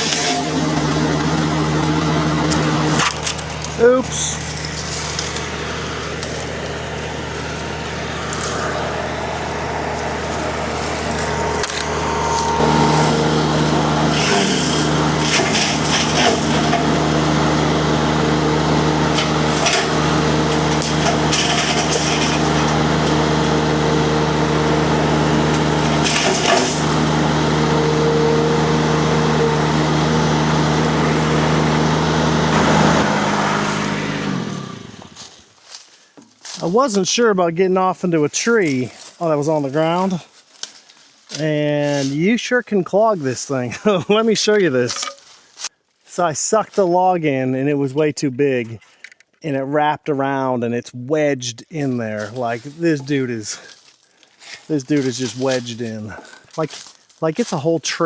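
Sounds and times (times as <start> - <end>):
wood cracking and splintering: 0.0 - 17.5, 18.7 - 23.9, 25.2 - 27.1
diesel engine running: 0.0 - 35.4.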